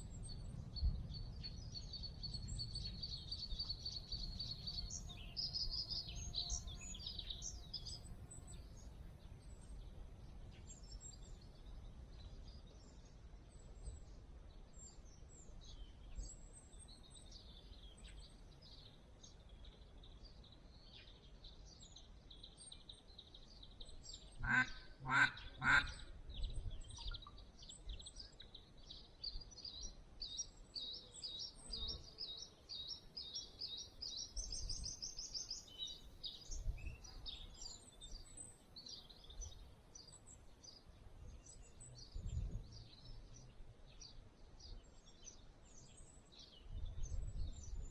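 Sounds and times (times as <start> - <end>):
songbirds twittering: 0.0 - 47.9
duck quacks: 24.4 - 26.0.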